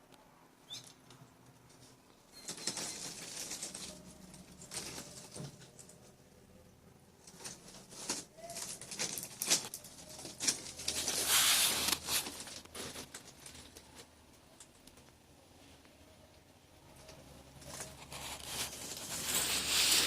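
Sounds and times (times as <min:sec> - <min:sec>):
plastic pipe scraping: 0:10.4 - 0:13.2.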